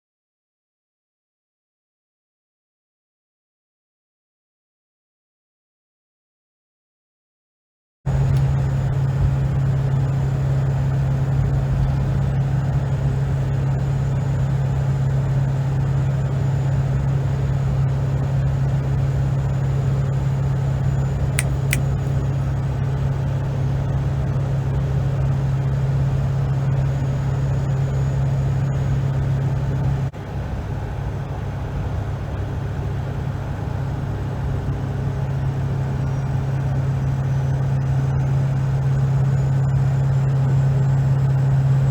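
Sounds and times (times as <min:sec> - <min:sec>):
finger snap: 0:21.4 - 0:22.2.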